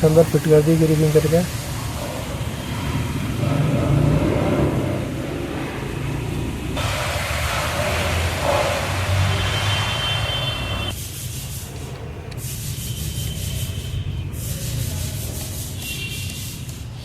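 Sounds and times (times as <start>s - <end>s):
fluttering rubbing: 10.7s - 16.8s
hand rubbing greased parts: 10.7s - 17.0s.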